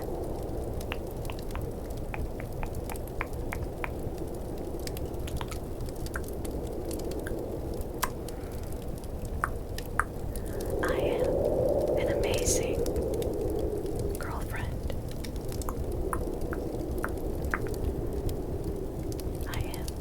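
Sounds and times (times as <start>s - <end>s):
fireplace crackle: 0.0s - 20.0s
howling wind: 0.0s - 20.0s
tongue clicks: 0.8s - 4.0s, 5.2s - 6.4s.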